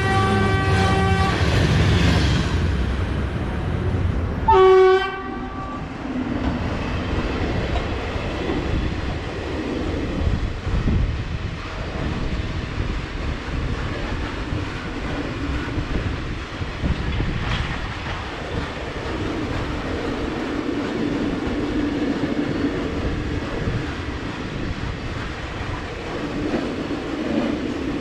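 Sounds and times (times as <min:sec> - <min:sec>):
train horn blast: 0:00.0 - 0:01.5, 0:04.4 - 0:05.9
train rumbling on tracks: 0:00.0 - 0:28.0.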